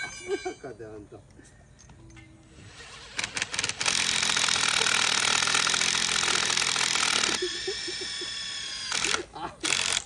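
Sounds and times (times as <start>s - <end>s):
power tool hammering rattle: 2.9s - 10.0s.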